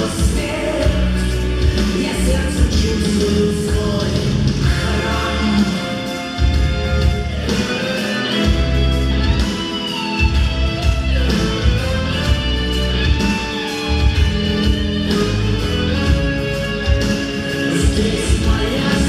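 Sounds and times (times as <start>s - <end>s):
instrumental music with heavy bass: 0.0s - 19.0s.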